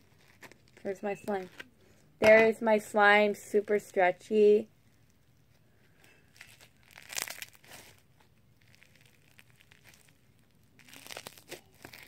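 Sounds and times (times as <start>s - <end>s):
crunchy slime crackling: 6.0s - 12.0s.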